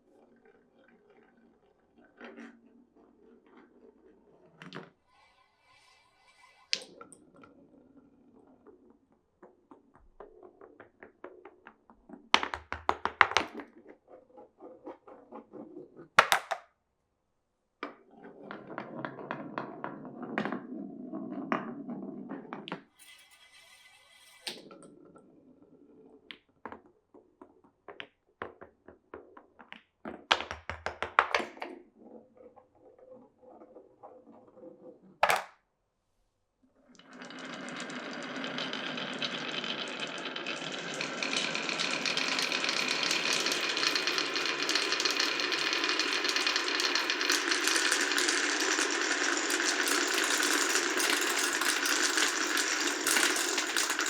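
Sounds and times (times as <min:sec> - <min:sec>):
marbles rolling on wooden track: 0:00.2 - 0:16.7, 0:17.8 - 0:35.5, 0:36.9 - 0:54.0
marbles clacking on wood: 0:06.6 - 0:07.6, 0:08.6 - 0:14.0, 0:14.6 - 0:16.7, 0:32.9 - 0:35.5, 0:37.0 - 0:54.0.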